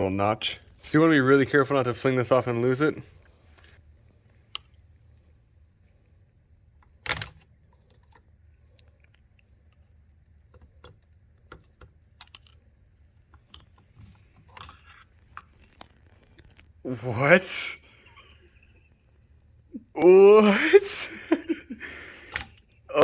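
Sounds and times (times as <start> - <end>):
hand tools clicking and tapping: 22.3 - 22.6.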